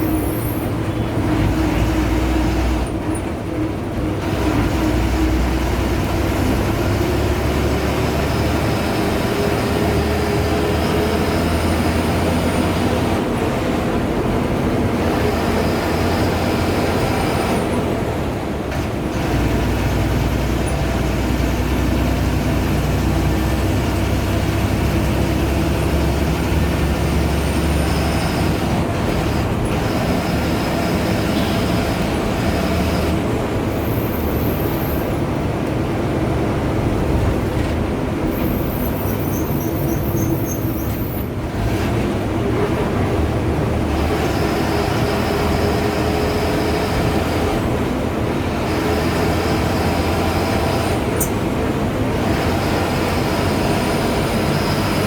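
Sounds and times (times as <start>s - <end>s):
bus diesel engine drone: 0.0s - 55.0s
road noise: 0.0s - 55.0s.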